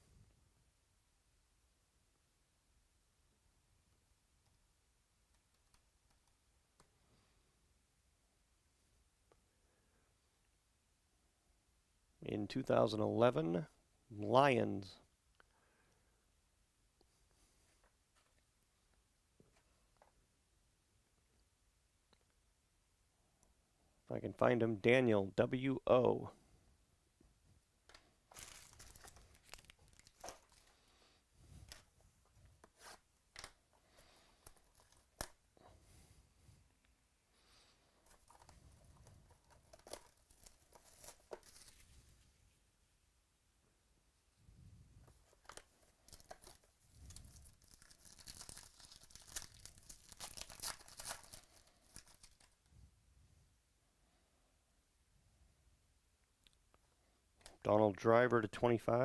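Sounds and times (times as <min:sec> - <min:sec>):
plastic packaging crinkling: 0:28.3 - 0:30.9, 0:38.0 - 0:41.9, 0:45.1 - 0:52.6.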